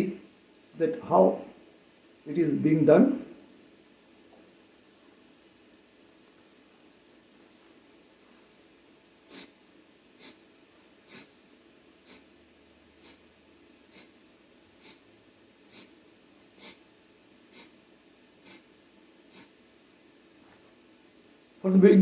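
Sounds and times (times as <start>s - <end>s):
forceful nasal exhalations: 9.3s - 9.6s, 10.2s - 11.4s, 12.0s - 12.4s, 13.0s - 13.3s, 13.9s - 14.2s, 14.8s - 15.1s, 15.7s - 16.9s, 17.5s - 17.8s, 18.4s - 19.6s.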